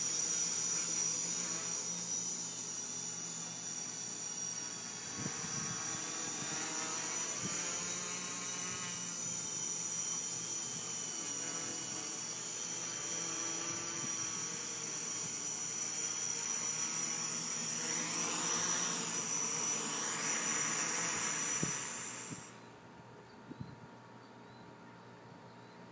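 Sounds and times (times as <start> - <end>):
drone motors whining: 0.0 - 22.7.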